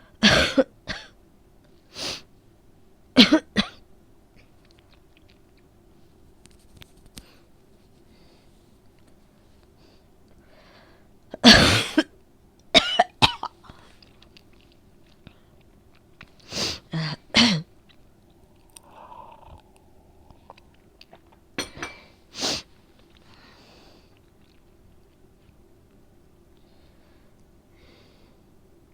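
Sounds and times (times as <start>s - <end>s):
person coughing: 0.2s - 1.2s, 11.4s - 12.1s, 12.8s - 13.5s, 16.9s - 17.7s
faint breaths: 7.2s - 11.2s, 18.2s - 21.0s, 21.8s - 24.2s, 26.6s - 28.6s.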